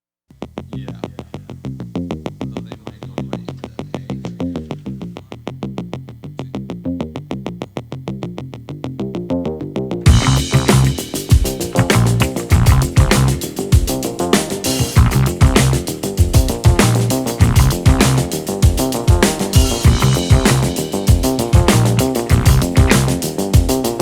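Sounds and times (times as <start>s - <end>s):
electronic synthesizer music: 10.1s - 24.0s.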